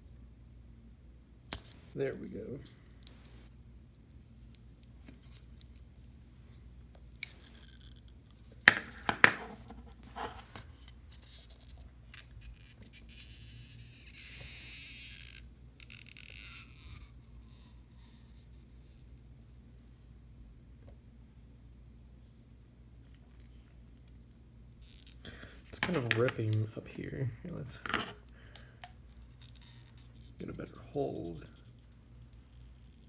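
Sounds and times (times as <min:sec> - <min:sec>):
scratchy hiss: 0:01.5 - 0:03.6, 0:29.1 - 0:33.0.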